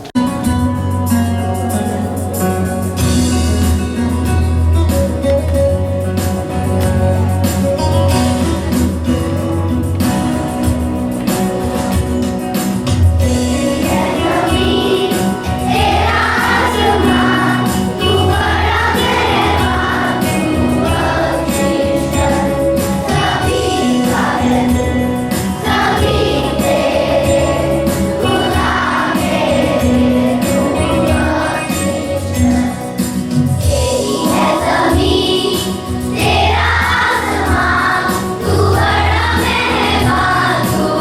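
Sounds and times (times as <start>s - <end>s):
instrumental accompaniment: 0.0s - 41.0s
group of voices singing: 13.2s - 41.0s.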